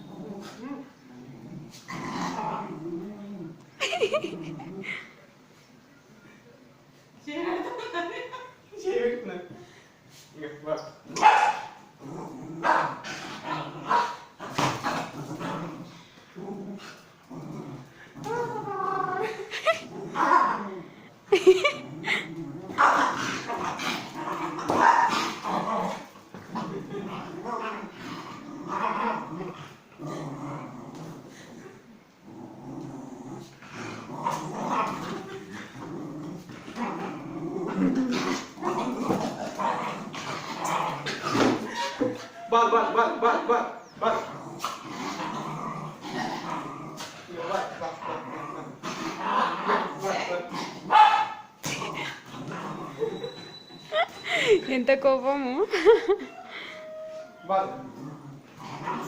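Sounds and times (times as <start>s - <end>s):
dog growling: 0.0s - 5.1s, 12.0s - 51.0s, 51.6s - 54.6s, 57.5s - 59.0s
small dog barking: 11.2s - 11.8s, 50.9s - 51.4s.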